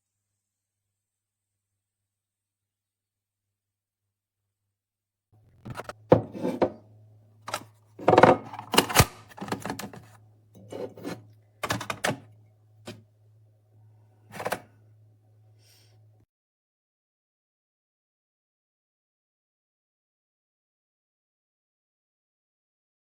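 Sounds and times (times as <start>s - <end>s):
low electrical hum: 5.4s - 16.3s.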